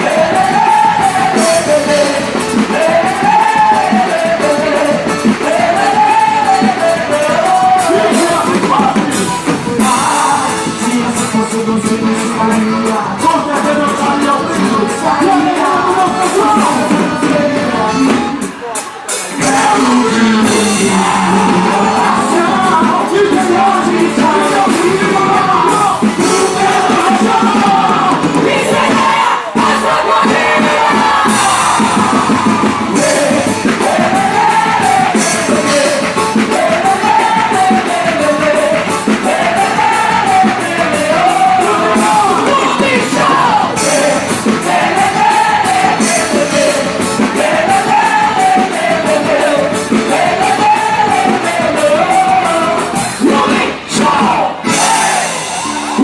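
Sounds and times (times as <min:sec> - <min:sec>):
music with percussive beat: 0:00.0 - 0:56.0
person singing: 0:00.0 - 0:56.0.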